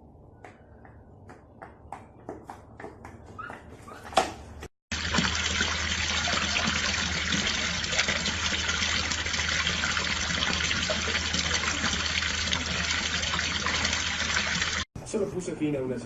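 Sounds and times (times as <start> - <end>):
water running: 4.9 - 14.9.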